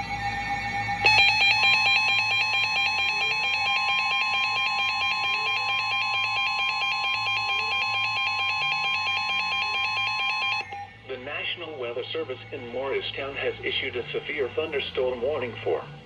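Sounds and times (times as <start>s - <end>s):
fast-pulsing high beeping alarm: 1.0s - 10.7s
steady warning alarm tone: 1.0s - 10.8s.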